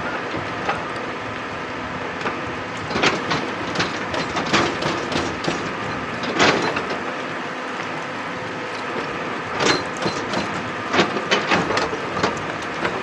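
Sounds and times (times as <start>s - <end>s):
excavator engine running: 0.0s - 13.0s
metallic clanks and knocks: 2.9s - 7.0s, 9.6s - 13.0s.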